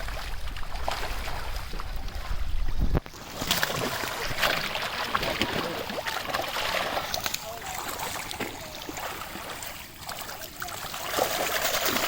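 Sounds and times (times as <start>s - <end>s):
wind buffeting microphone: 0.0s - 3.2s
pond water splashing: 0.0s - 12.0s.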